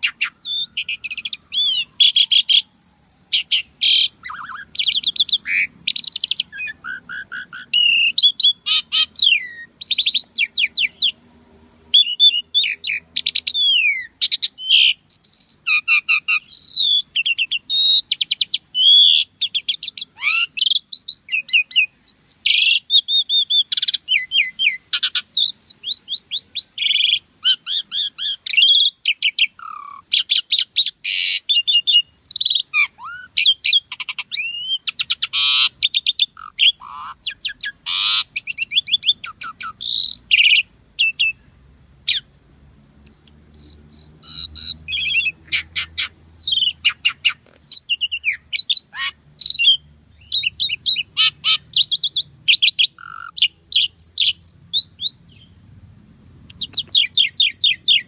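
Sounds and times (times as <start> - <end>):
starling singing: 0.0 - 42.3, 43.1 - 55.6, 56.5 - 58.0.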